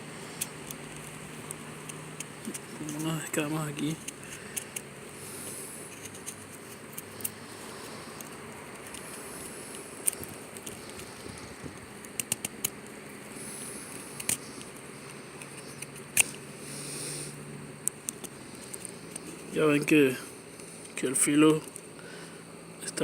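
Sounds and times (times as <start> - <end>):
knife carving wood: 0.1 - 19.9
sharp clicks: 3.8 - 13.0, 13.9 - 16.4.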